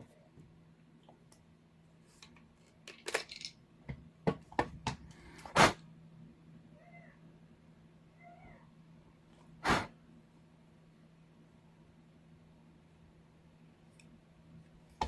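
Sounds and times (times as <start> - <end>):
cat meowing: 6.8 - 7.2, 8.2 - 8.7.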